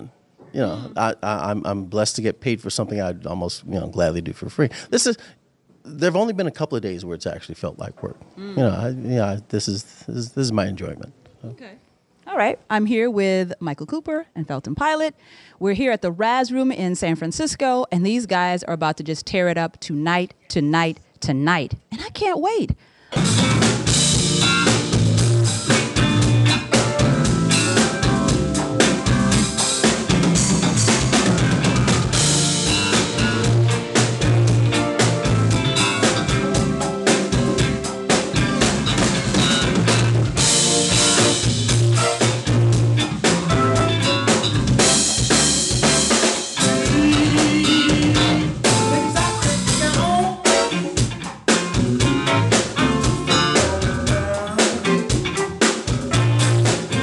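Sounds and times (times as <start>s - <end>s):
band playing: 23.1s - 57.0s
drum kit: 23.1s - 57.0s.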